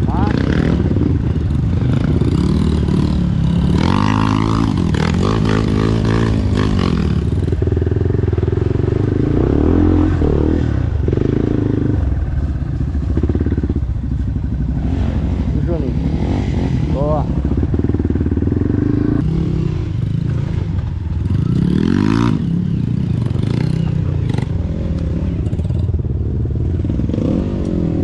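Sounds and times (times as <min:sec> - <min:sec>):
dirt bike engine revving: 0:00.1 - 0:12.5.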